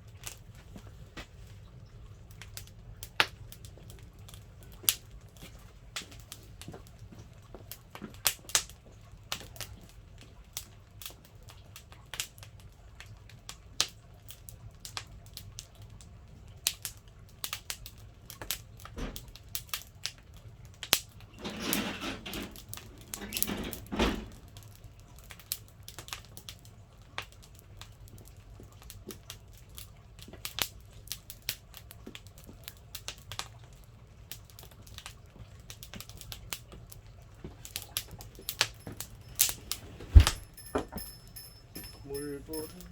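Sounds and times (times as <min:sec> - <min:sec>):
firewood crackling and popping: 0:00.0 - 0:42.9
rustling scrape: 0:38.8 - 0:42.9.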